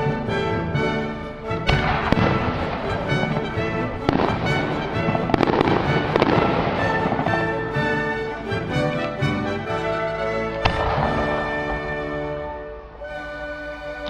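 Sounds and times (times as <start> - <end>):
orchestral music: 0.0 - 14.0
fireworks bursting and crackling: 1.5 - 9.3, 10.6 - 13.1.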